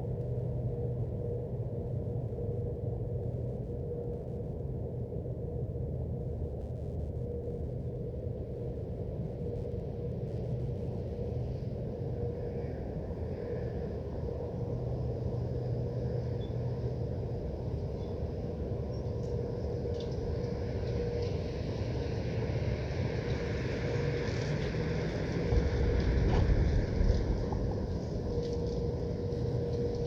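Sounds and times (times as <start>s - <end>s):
constant hum: 0.0s - 30.0s
low industrial rumble: 18.8s - 30.0s.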